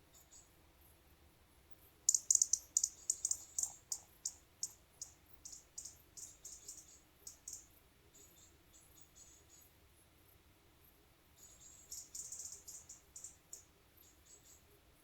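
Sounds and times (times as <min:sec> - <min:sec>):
small animal chirping: 0:02.1 - 0:07.7, 0:11.6 - 0:13.7.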